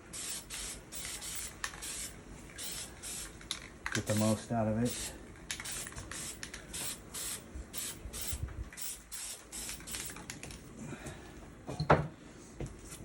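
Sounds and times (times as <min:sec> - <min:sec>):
spray paint can hissing: 0:00.1 - 0:03.5, 0:04.1 - 0:10.2.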